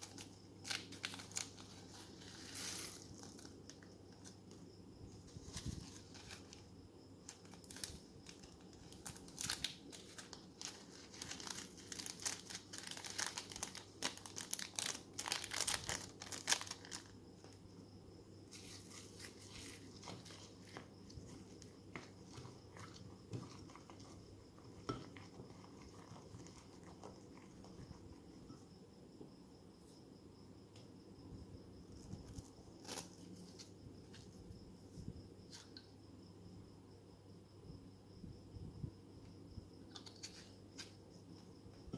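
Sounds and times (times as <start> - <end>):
plastic bag crinkling: 0.0 - 3.5, 7.3 - 17.1.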